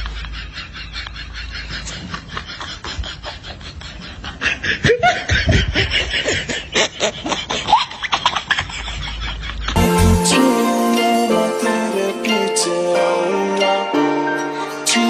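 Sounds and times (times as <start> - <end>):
laughter and snickering: 0.0 - 9.8.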